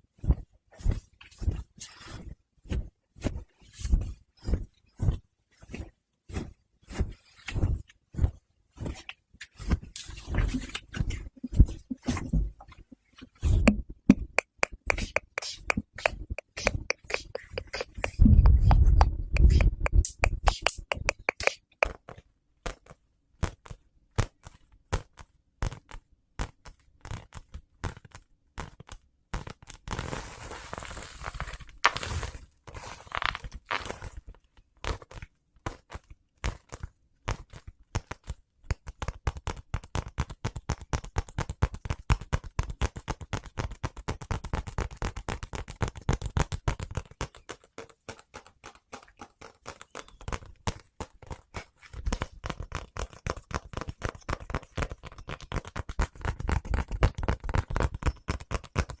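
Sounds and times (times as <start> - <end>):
fabric rustling and rubbing: 0.1 - 21.7, 29.9 - 34.4
sharp click: 13.7 - 21.9.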